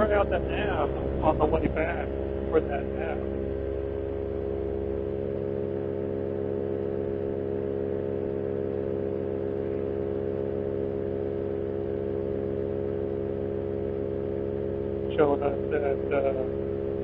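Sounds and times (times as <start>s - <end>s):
paramotor engine droning: 0.0s - 17.0s.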